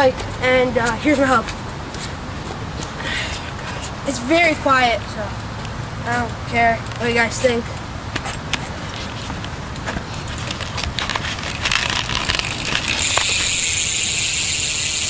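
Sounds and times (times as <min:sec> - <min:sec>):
person speaking: 0:00.0 - 0:01.5, 0:03.1 - 0:07.8
freewheel hub ticking: 0:09.7 - 0:15.0
spinning wheel whir: 0:11.6 - 0:15.0.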